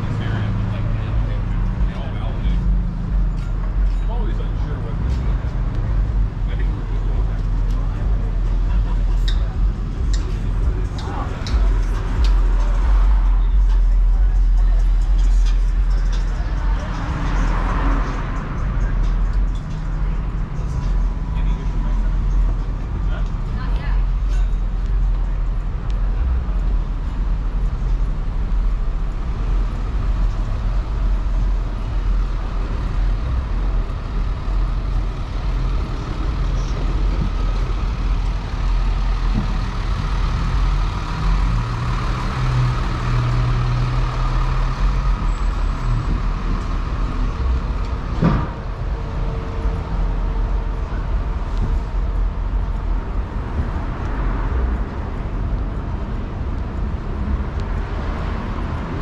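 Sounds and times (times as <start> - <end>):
heavy vehicle engine running: 0.0 - 59.0
passing vehicles rumble: 0.0 - 59.0.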